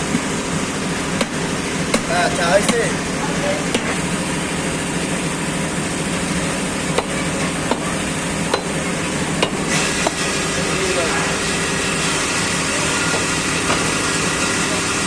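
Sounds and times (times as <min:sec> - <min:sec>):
street traffic noise: 0:00.0 - 0:15.0
blade chopping on wooden block: 0:01.2 - 0:02.9, 0:03.7 - 0:04.0, 0:06.9 - 0:07.9, 0:08.5 - 0:08.8, 0:09.4 - 0:10.2.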